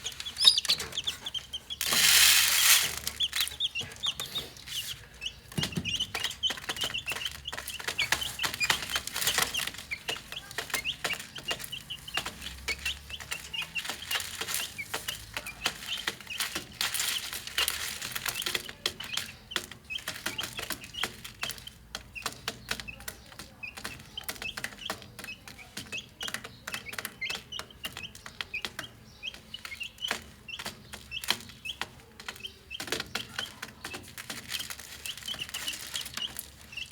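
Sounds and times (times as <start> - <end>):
chicks pecking taps: 0.0 - 36.9
chicks peeping: 0.0 - 36.9
loud burst of rustling: 1.8 - 3.2.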